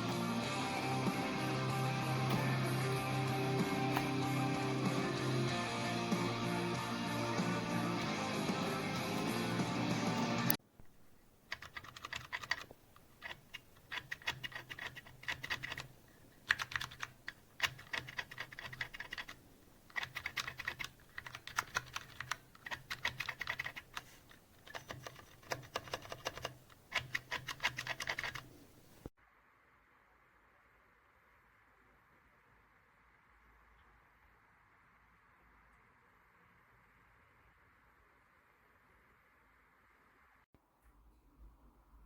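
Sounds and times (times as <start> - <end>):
mechanical keyboard typing: 11.5 - 28.5.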